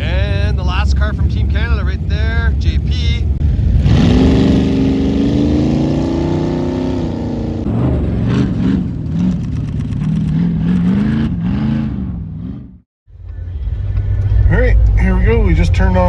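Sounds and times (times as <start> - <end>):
race car engine revving: 0.0 - 16.0.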